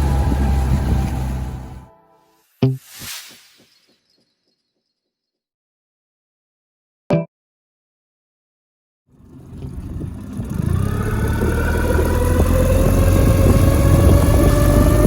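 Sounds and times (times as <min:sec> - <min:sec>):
outboard motor running: 0:00.0 - 0:01.8, 0:09.1 - 0:15.0.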